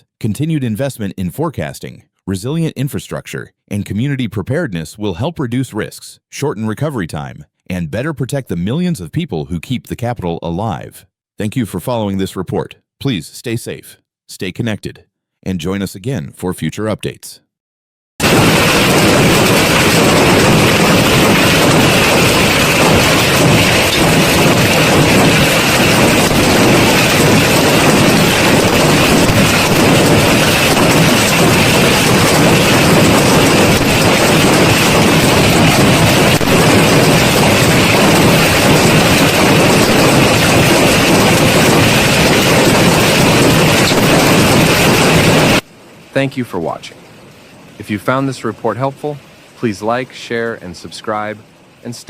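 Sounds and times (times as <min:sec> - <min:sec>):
loud storm roar: 0:18.2 - 0:45.6
heavy rain downpour: 0:18.2 - 0:52.0.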